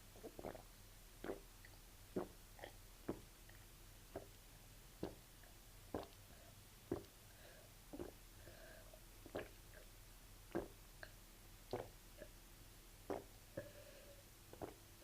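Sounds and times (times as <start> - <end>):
person gulping water: 0.1 - 4.4, 5.0 - 6.3, 6.9 - 7.2, 7.9 - 8.2, 9.2 - 9.9, 10.5 - 12.4, 13.0 - 13.8, 14.5 - 15.0.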